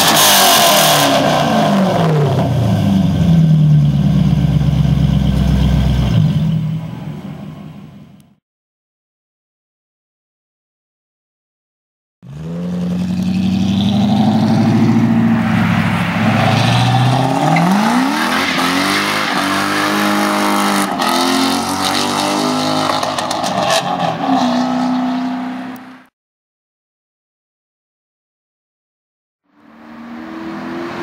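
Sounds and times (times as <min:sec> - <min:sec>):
car engine revving: 0:12.3 - 0:26.1.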